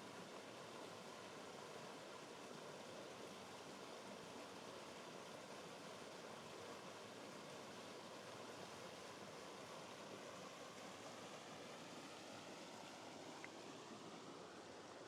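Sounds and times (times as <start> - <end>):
waterfall spilling into pool: 0.0 - 15.0.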